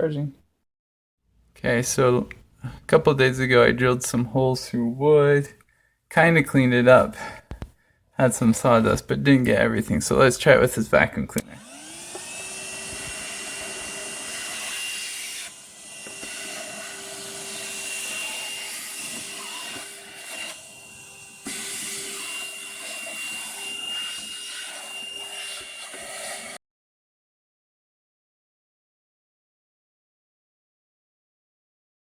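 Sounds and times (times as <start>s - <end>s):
handheld vacuum whining: 11.4s - 26.6s.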